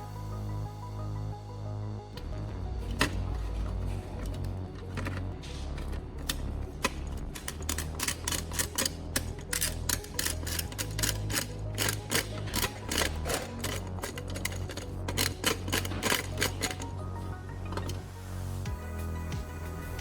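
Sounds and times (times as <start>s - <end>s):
steady low hum: 0.0s - 20.0s
sharp clicks: 2.2s - 17.0s.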